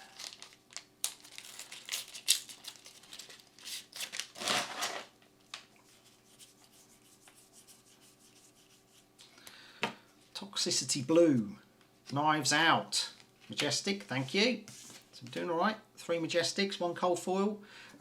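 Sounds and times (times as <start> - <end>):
foil wrapper tearing and crinkling: 0.0 - 5.1.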